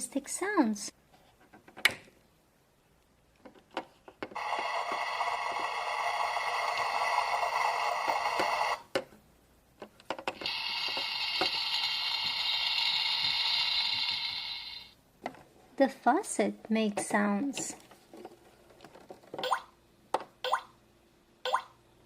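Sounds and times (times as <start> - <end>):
higher hissing effect: 10.4 - 15.0
toy speaker sizzling hiss: 10.4 - 15.0.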